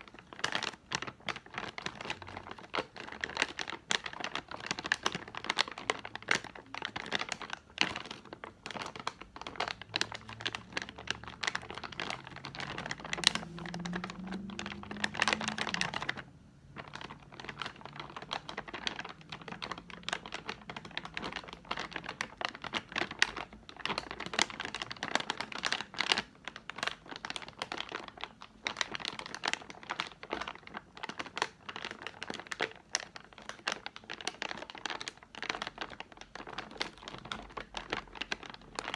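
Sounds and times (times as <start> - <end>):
crinkling plastic packaging: 0.0 - 38.9.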